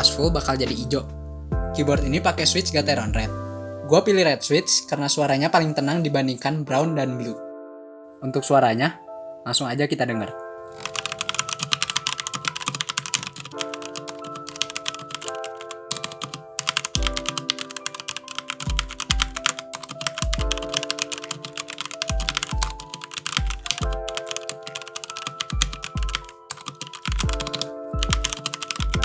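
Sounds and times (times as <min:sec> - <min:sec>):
kick-drum beat: 0:00.0 - 0:00.6, 0:01.6 - 0:02.3, 0:03.1 - 0:03.4, 0:27.1 - 0:29.0
background music with sustained chords: 0:00.0 - 0:29.0
fast typing on mechanical keyboard: 0:10.8 - 0:29.0.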